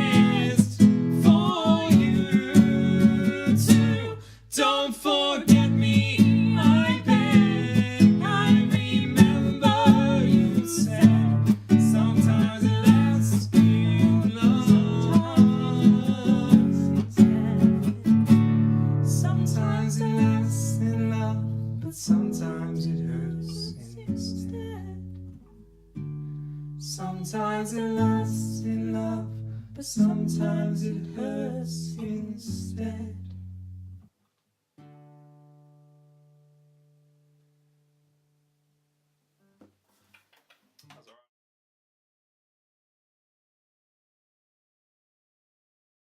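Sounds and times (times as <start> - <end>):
acoustic guitar picking: 0.0 - 4.3, 5.5 - 34.0
person singing wordless notes: 0.0 - 18.1.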